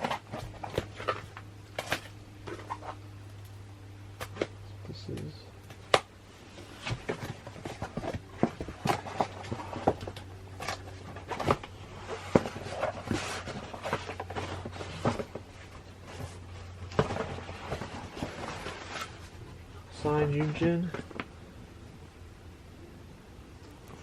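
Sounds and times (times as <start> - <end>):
steady low hum: 0.0 - 24.0
clicks taps and rustles: 4.2 - 19.6, 20.3 - 21.3.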